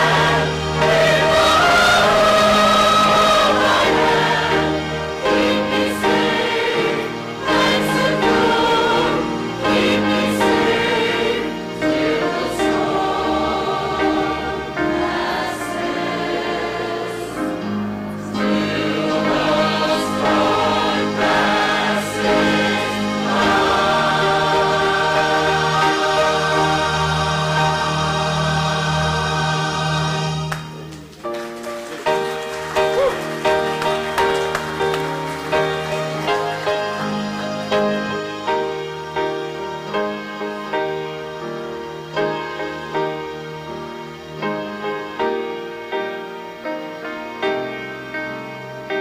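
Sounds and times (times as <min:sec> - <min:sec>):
choir singing held chords: 0:00.0 - 0:31.2, 0:32.0 - 0:49.0.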